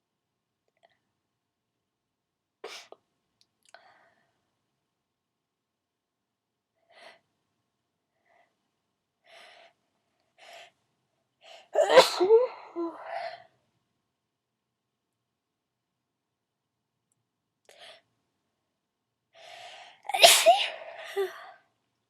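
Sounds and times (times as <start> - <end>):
loud wet sneeze: 11.8 - 12.3, 20.1 - 21.1.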